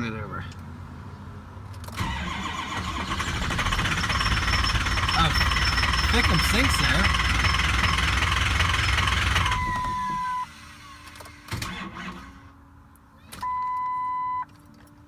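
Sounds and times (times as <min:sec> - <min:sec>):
diesel engine cranking: 0:01.8 - 0:12.5
electronic beeps: 0:03.8 - 0:10.4.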